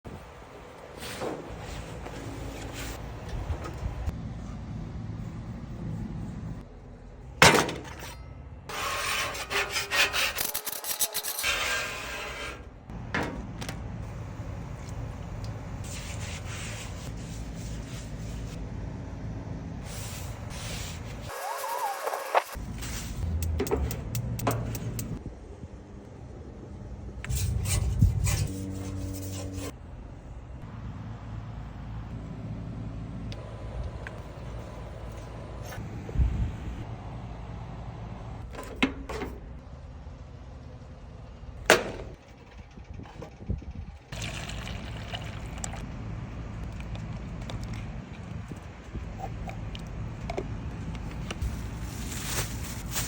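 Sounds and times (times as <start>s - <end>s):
metal scraping on a griddle: 8.0s - 12.7s, 27.3s - 29.8s.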